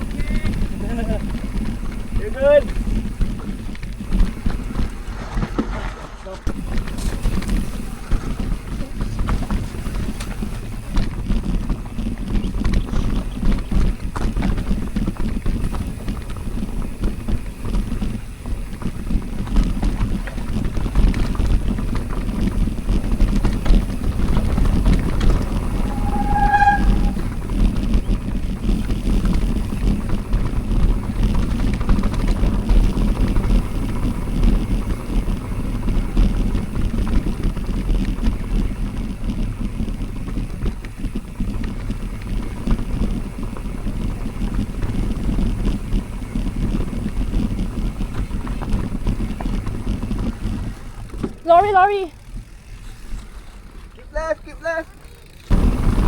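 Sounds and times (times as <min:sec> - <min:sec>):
wind noise on microphone: 0:00.0 - 0:51.3, 0:55.5 - 0:56.0
bike rattling over rough ground: 0:00.0 - 0:56.0
brief pitched tone: 0:25.4 - 0:27.3.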